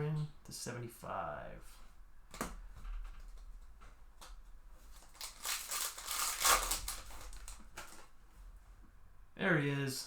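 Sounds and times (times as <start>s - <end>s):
foil wrapper crinkling: 4.9s - 8.1s.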